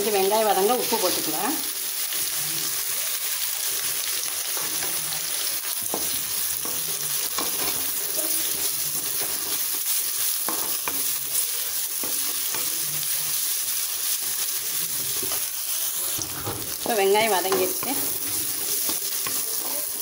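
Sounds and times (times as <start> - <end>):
onions sizzling in hot oil: 0.0 - 20.0
spatula scraping pan: 4.4 - 13.5, 14.2 - 20.0.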